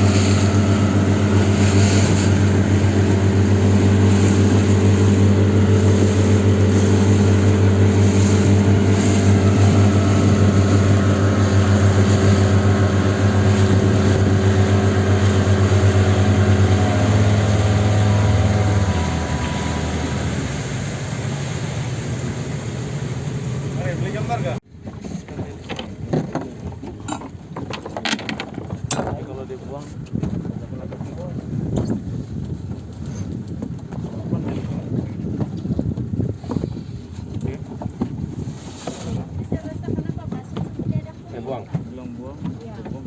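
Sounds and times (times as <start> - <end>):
engine running: 0.0 - 24.6.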